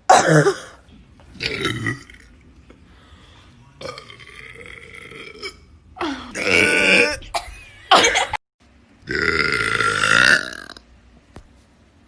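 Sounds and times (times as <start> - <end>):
person burping: 1.4 - 2.4, 3.8 - 8.2, 9.0 - 10.8.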